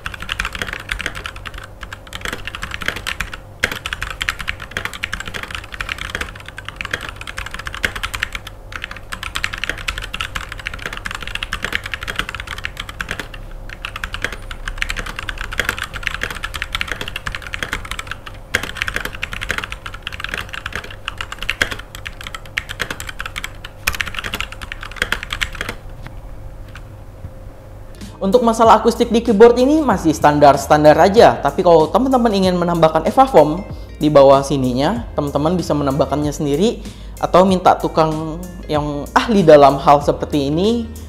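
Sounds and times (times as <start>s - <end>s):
mechanical keyboard typing: 0.0s - 25.8s.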